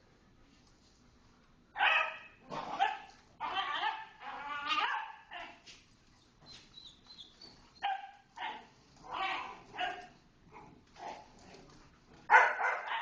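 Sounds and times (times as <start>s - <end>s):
small dogs barking: 1.8s - 5.6s, 7.8s - 10.6s, 12.3s - 13.0s.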